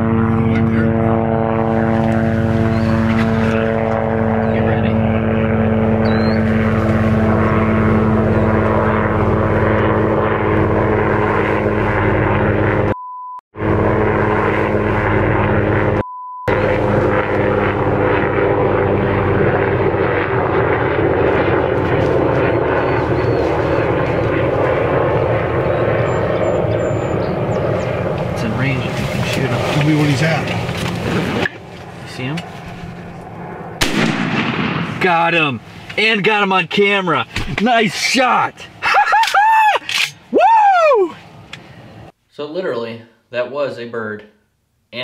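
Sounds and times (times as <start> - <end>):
low-flying airplane engine hum: 0.0 - 42.2
short beep: 12.9 - 13.4, 16.0 - 16.5.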